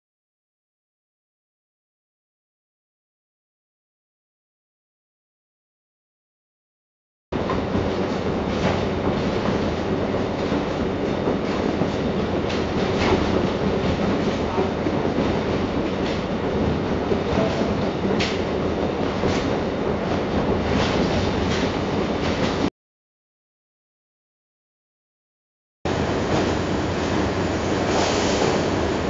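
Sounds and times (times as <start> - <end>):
train running on rails: 7.4 - 22.7, 25.9 - 29.0.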